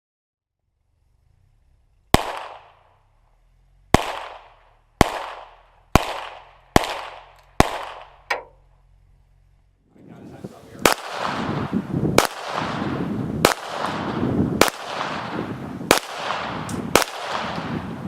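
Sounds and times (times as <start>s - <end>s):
gunshots with echo: 2.2s - 2.8s, 3.9s - 8.2s, 10.8s - 17.9s.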